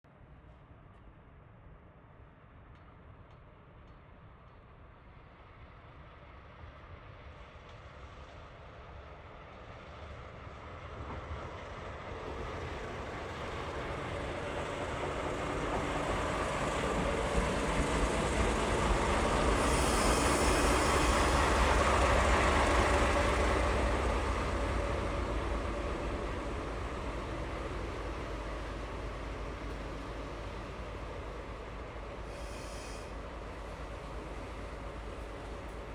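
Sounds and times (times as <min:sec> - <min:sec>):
locomotive engine approaching: 0:11.3 - 0:35.9.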